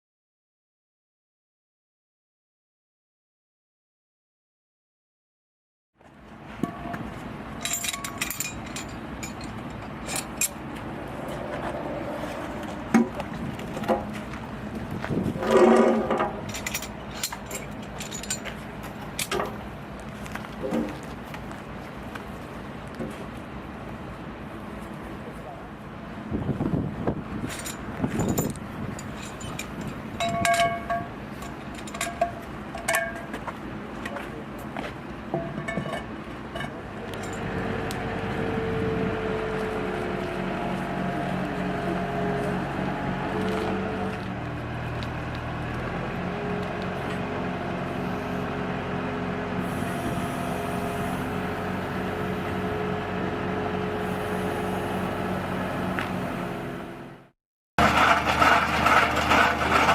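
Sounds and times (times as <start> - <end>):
motor humming: 49.6 - 57.1.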